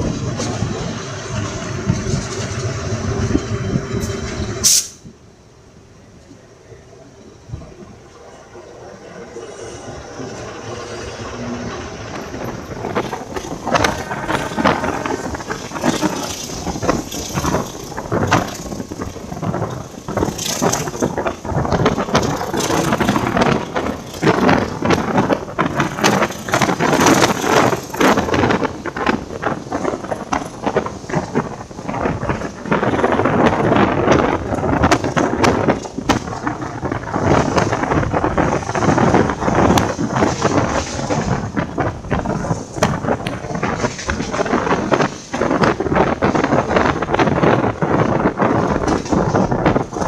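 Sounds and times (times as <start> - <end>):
train wheels clattering on rails: 0.0 - 5.2, 7.5 - 50.0
car body rattling: 12.1 - 50.0.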